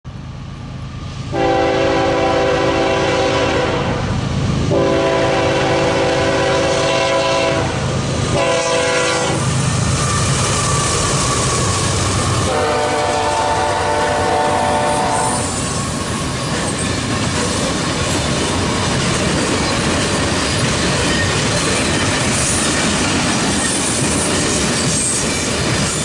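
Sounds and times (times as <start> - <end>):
low rumble of train: 0.0 - 26.0
locomotive air horn blasts: 1.3 - 4.1, 4.7 - 9.5, 12.5 - 15.6.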